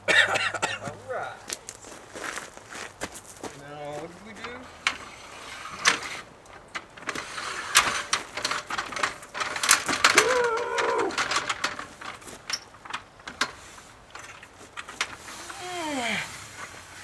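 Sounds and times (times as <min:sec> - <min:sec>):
hardware clattering and knocking: 0:04.2 - 0:15.3.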